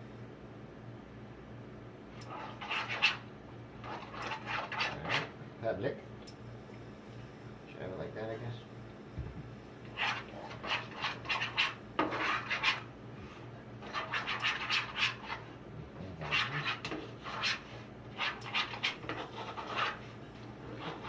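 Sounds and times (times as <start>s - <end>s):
scratching and rubbing: 2.3s - 3.2s, 3.8s - 5.4s, 9.8s - 12.9s, 13.8s - 15.6s, 16.2s - 21.0s.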